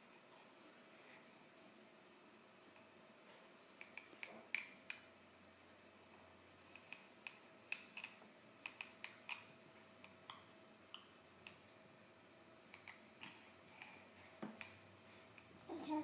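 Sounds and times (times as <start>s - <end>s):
teeth grinding clicks: 6.8s - 11.6s.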